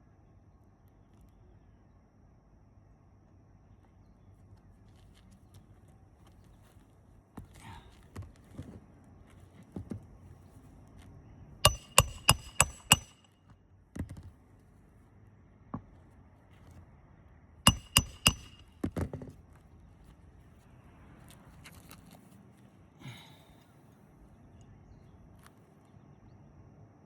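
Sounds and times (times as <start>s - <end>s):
hammer striking nails: 11.6s - 13.3s, 17.7s - 19.0s.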